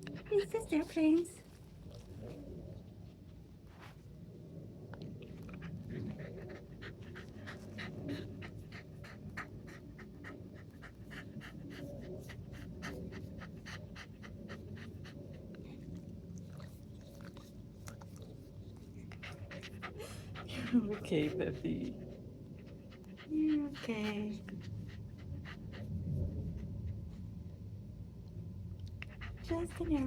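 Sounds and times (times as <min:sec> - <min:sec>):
dog panting rapidly: 0:00.0 - 0:01.4, 0:05.5 - 0:27.2, 0:28.9 - 0:30.0
low steady rumble: 0:00.0 - 0:30.0.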